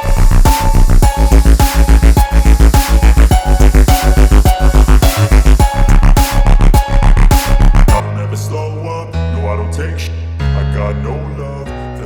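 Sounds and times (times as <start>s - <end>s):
electronic hip-hop beat: 0.0s - 9.3s.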